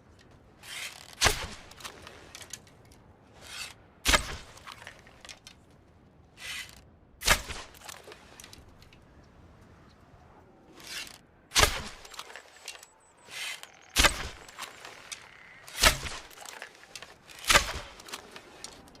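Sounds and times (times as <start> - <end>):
arrow shots: 0.6 - 2.6, 3.4 - 5.4, 6.4 - 8.6, 10.8 - 18.9.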